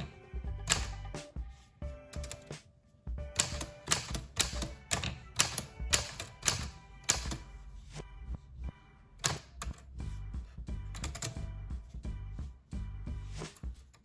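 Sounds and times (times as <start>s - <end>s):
manual typewriter keystrokes: 0.0s - 1.0s, 2.1s - 2.5s, 3.4s - 7.4s, 9.2s - 9.8s, 11.0s - 11.4s.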